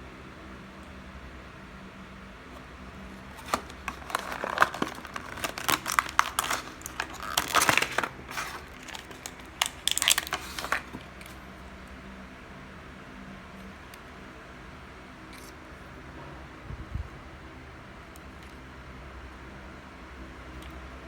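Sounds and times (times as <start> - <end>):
plastic and card packaging crinkling: 3.1 - 11.4.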